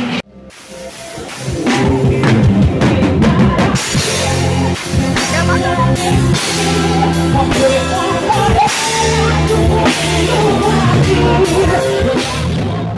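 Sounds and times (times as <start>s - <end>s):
bass guitar: 0.0s - 12.9s
drum kit with cymbals: 0.0s - 12.9s
electric guitar chords: 0.0s - 12.9s
person singing: 1.1s - 12.9s.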